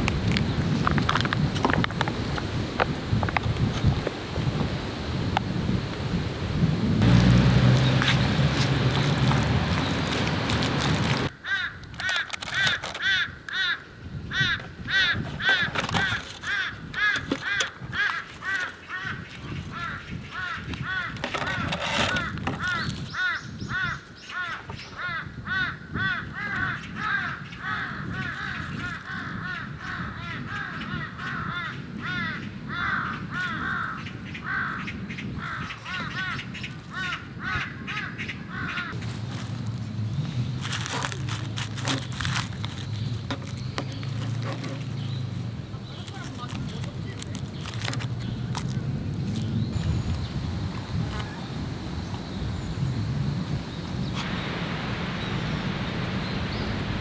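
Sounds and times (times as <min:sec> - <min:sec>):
birds calling: 0:07.0 - 0:52.8
loud rain-like noise: 0:53.4 - 0:57.0.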